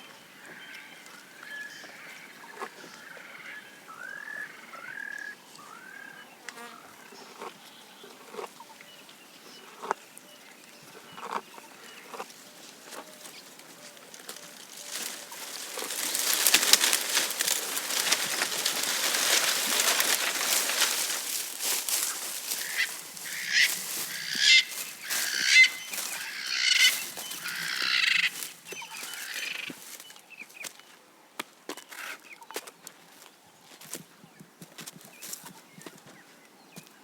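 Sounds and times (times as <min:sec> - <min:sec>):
giraffe tearing and chewing grass: 0:11.2 - 0:28.5.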